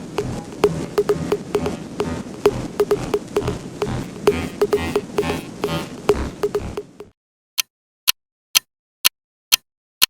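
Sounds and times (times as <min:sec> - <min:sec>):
music with low beat: 0:00.0 - 0:07.1
clock-like ticks: 0:00.0 - 0:07.2, 0:08.6 - 0:09.6.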